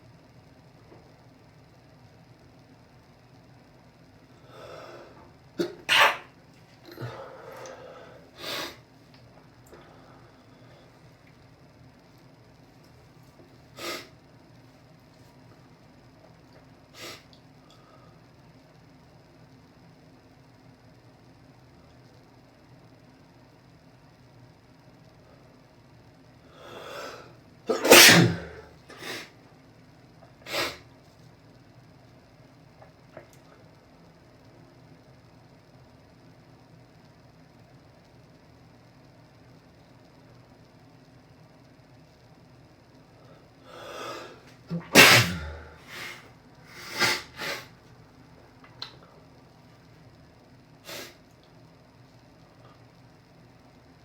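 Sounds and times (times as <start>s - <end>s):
breaths: 4.4s - 5.2s, 6.9s - 8.8s, 9.7s - 11.0s, 43.2s - 44.5s
man sneezing: 5.6s - 6.3s, 27.7s - 29.3s, 44.7s - 47.7s
short bursts of breath: 45.0s - 47.7s.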